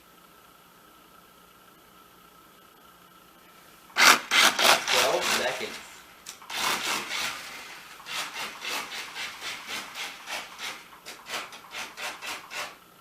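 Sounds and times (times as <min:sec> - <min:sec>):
rhythmic scraping strokes: 0:04.0 - 0:12.8.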